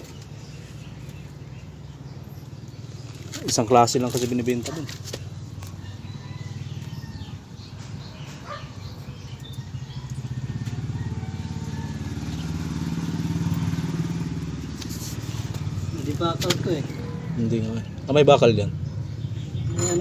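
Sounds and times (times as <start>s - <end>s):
vehicle engine running at low speed: 0.0s - 20.0s.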